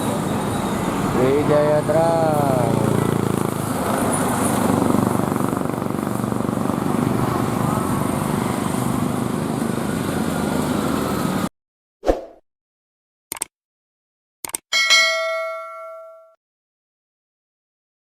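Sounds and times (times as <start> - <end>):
bus engine running: 0.0 - 11.5.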